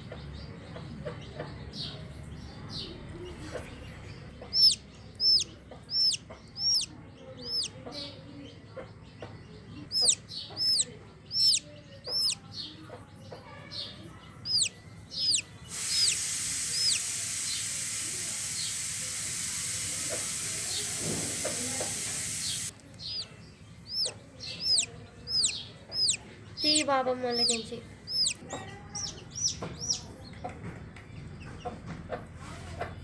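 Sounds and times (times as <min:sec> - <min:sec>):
chick peeping inside egg: 0:02.8 - 0:31.8
steady hiss: 0:15.7 - 0:22.7.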